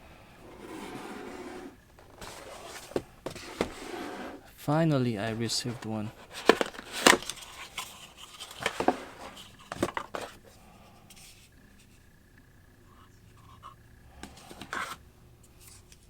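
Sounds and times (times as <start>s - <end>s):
packaging clicks and scrapes: 0.4s - 4.4s, 5.2s - 10.6s
faint handling of packaging: 0.4s - 12.0s.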